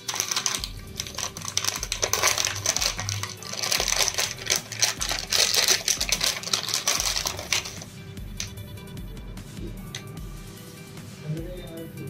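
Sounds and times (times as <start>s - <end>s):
plastic packaging crackling: 0.0s - 7.9s.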